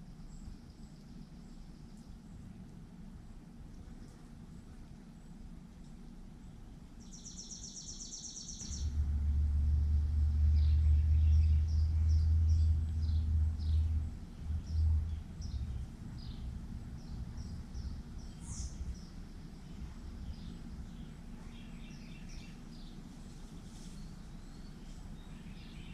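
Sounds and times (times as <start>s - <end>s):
songbirds chirping: 0.0s - 25.9s
low rumble: 8.4s - 25.9s.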